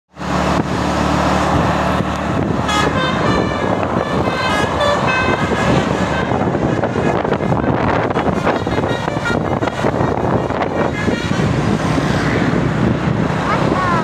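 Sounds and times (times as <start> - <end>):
bus engine and road noise: 0.1 - 14.0
multi-tone musical bus horn: 2.4 - 11.8.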